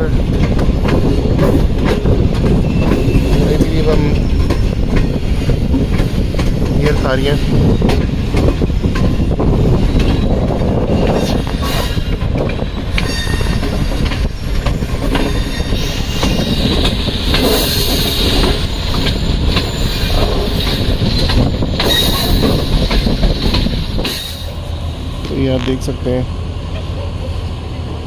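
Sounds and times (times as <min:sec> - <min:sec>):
train running over rails: 0:00.0 - 0:28.0
high wheel squeal: 0:02.6 - 0:04.4, 0:09.8 - 0:13.8, 0:15.3 - 0:16.9, 0:17.5 - 0:22.7.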